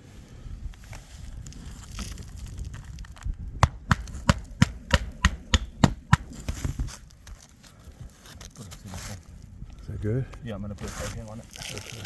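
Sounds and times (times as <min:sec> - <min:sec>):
hammer striking nails: 0:03.6 - 0:06.7.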